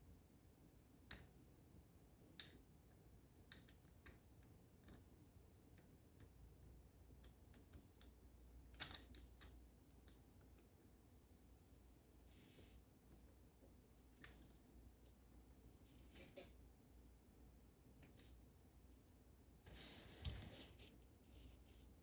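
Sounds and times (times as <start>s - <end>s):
small clicks of metal lock parts: 8.8s - 9.6s.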